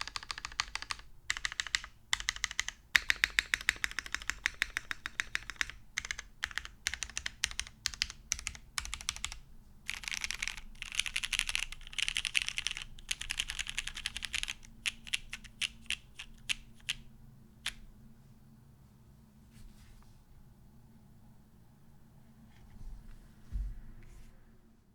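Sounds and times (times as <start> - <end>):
mechanical keyboard typing: 0.0 - 17.0.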